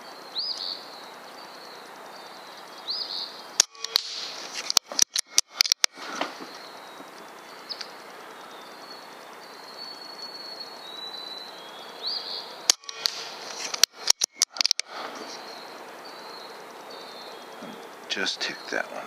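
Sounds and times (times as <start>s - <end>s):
faint bird chirps: 0.0s - 4.4s, 5.2s - 19.0s
rifle shots: 3.6s - 4.4s, 12.7s - 13.4s.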